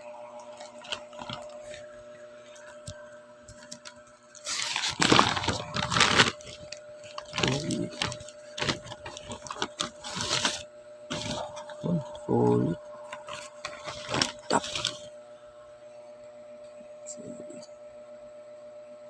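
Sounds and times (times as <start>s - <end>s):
faint steady hum: 0.0s - 19.0s
packaging rustling and crinkling: 0.4s - 12.2s, 13.1s - 15.1s.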